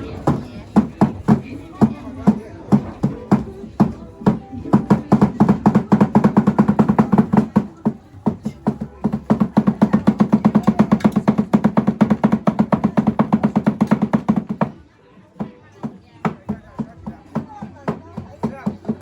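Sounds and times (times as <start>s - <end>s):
drum beating fast: 0.2s - 14.7s.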